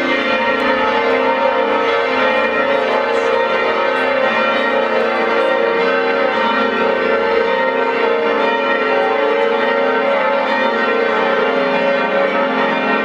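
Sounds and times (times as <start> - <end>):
church bells pealing: 0.0 - 13.0.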